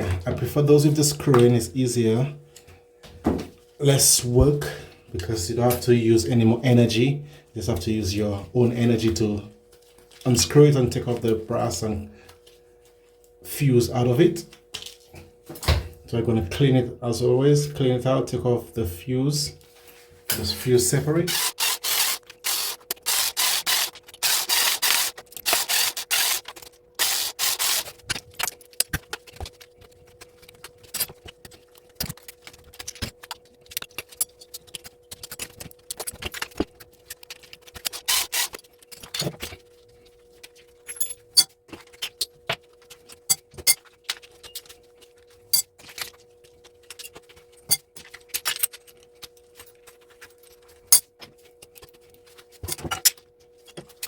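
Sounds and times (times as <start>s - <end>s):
faint steady hum: 0.0s - 54.0s
small metal parts clinking: 40.8s - 41.5s.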